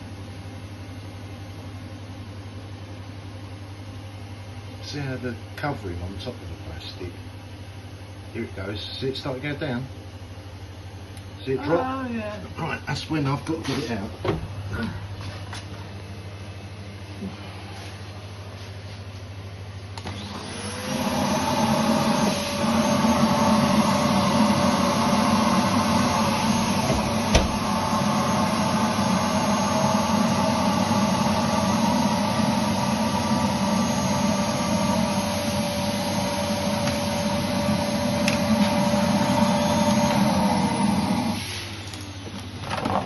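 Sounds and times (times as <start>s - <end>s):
vacuum cleaner motor whining: 20.0s - 43.0s.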